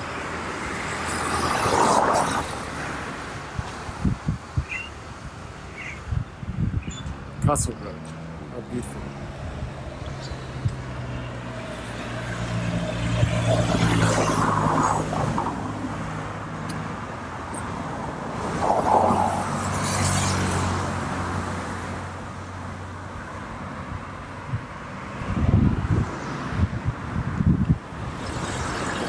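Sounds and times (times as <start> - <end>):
steady traffic engine hum: 0.0 - 29.0
vehicles passing: 0.0 - 29.0.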